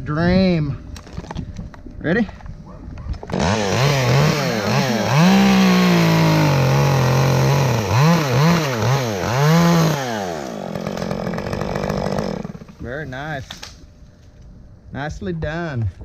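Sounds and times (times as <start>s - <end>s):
chainsaw revving: 3.3s - 13.1s.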